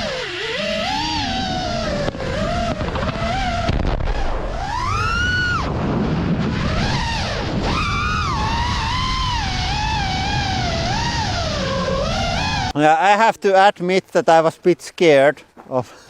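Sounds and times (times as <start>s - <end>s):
gliding theremin-like melody: 0.0s - 5.7s, 6.5s - 12.7s
steady low rumble: 0.9s - 12.8s.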